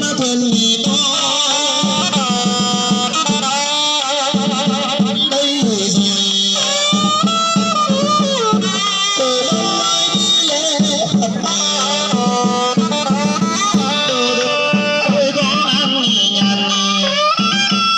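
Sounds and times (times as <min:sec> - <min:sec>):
drum beats: 0:00.0 - 0:17.9
wavering melody: 0:05.4 - 0:17.9.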